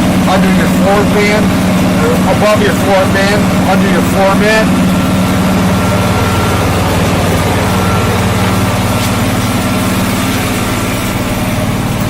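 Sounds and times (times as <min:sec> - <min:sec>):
garden tractor engine running: 0:00.0 - 0:12.0.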